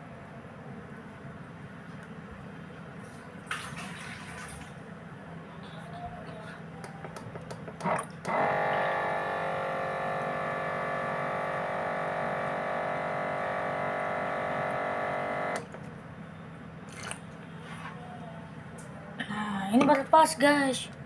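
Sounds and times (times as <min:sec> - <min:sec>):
electric water pump buzzing: 0:07.8 - 0:15.8.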